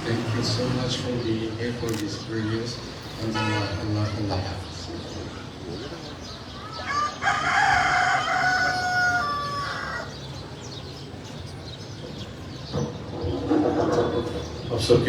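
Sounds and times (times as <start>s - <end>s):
rooster crowing: 6.7s - 10.1s.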